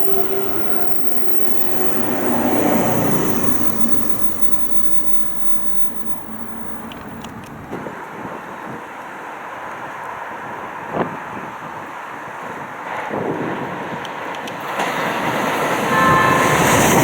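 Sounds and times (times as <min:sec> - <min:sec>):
steady background noise: 0:00.0 - 0:08.3
train passing close by: 0:00.0 - 0:17.0.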